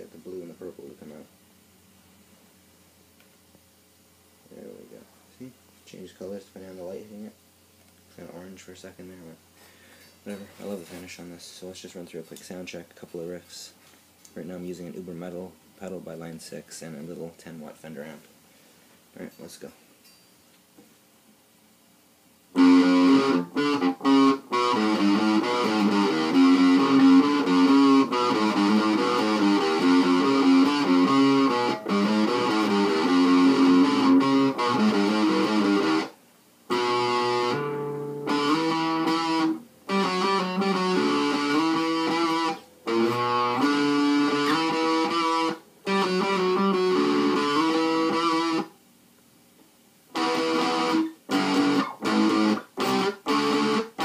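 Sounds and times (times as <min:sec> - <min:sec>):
distorted electric guitar riffs: 0:22.5 - 0:48.7, 0:50.1 - 0:54.0.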